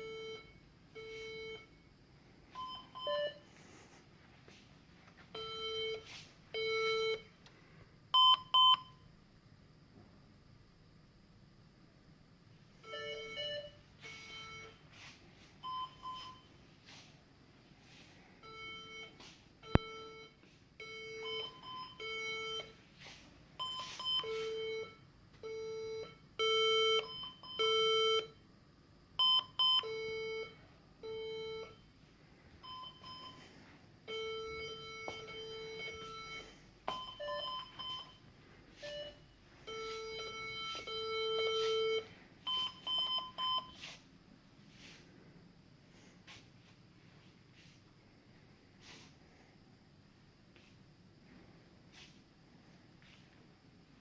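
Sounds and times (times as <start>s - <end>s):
computer speaker beeping: 34.1s - 43.8s.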